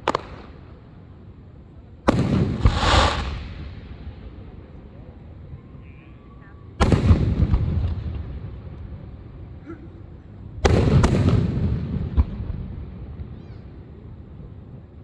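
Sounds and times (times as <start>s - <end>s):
fireworks exploding: 0.0s - 0.8s, 2.1s - 4.2s, 6.8s - 8.3s, 10.6s - 13.3s
sharp firework pop: 2.1s - 3.5s
rumble after bursts: 2.3s - 4.5s.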